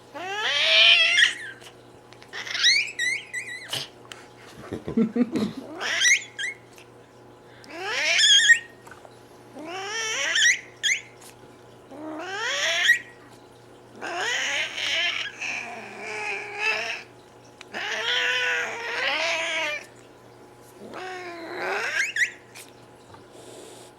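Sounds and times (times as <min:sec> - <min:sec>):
cat squeaky calls: 0:00.2 - 0:01.6, 0:02.4 - 0:03.9, 0:05.8 - 0:06.6, 0:07.9 - 0:08.8, 0:21.8 - 0:22.5.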